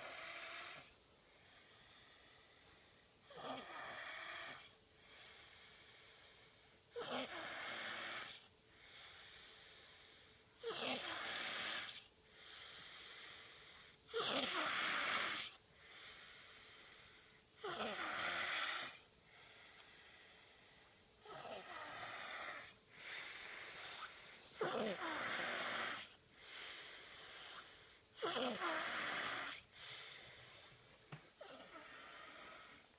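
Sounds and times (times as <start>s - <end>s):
quiet breathing: 0.0s - 32.9s
person snoring: 3.3s - 4.7s, 14.1s - 15.5s, 17.6s - 19.0s, 21.2s - 30.7s, 31.4s - 32.9s.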